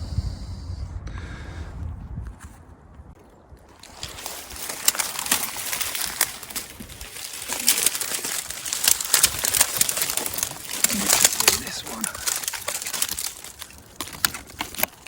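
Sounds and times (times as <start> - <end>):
dry leaves and twigs crackling: 2.5 - 15.0
twigs snapping: 3.2 - 15.0.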